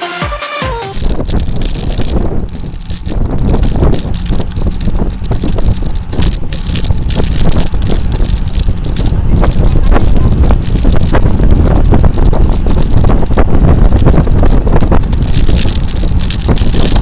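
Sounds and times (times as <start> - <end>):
electronic dance music: 0.0 - 1.0
bicycle clicks and rattles: 1.0 - 17.0
wind buffeting microphone: 1.0 - 17.0.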